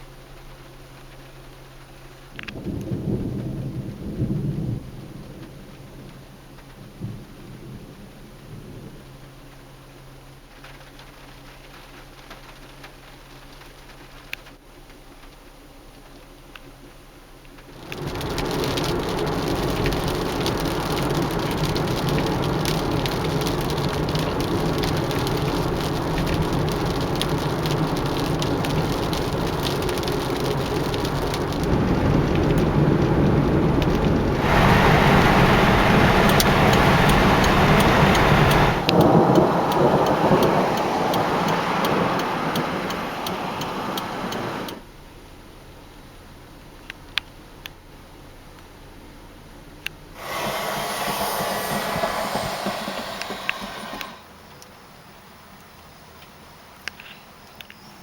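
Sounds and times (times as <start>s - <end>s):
heavy rain falling: 0.3s - 14.3s, 17.6s - 44.8s, 50.2s - 54.4s
low rumble: 30.9s - 42.5s, 50.2s - 54.5s.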